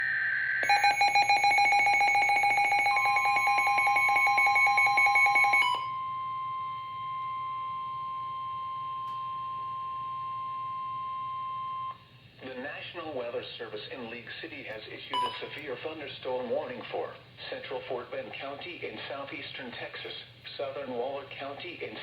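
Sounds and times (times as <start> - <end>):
pulsing electronic alarm beep: 0.0 - 12.0
steady warning tone: 0.0 - 12.0.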